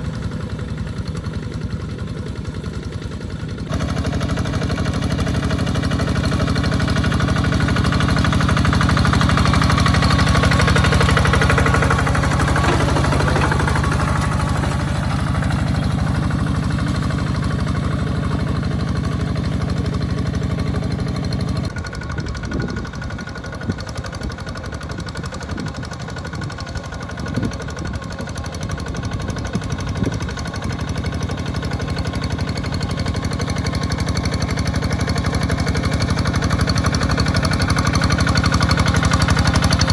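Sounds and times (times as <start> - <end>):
engine knocks: 0.0 - 39.9
walking tractor engine running: 0.0 - 39.9.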